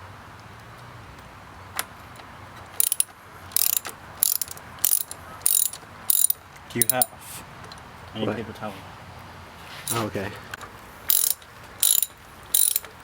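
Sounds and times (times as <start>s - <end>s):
socket ratchet clicking: 2.8s - 7.1s, 11.1s - 13.0s.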